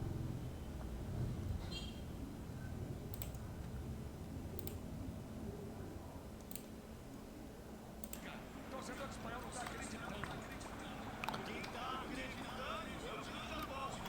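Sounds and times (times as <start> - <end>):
low steady hum: 0.0 - 14.0
computer mouse clicks: 3.1 - 3.4, 4.6 - 4.8, 6.4 - 6.8, 8.0 - 8.3.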